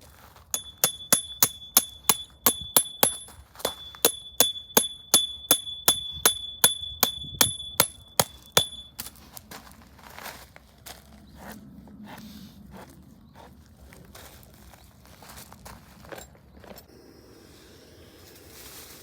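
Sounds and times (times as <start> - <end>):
metal struck with ringing tone: 0.6 - 9.0.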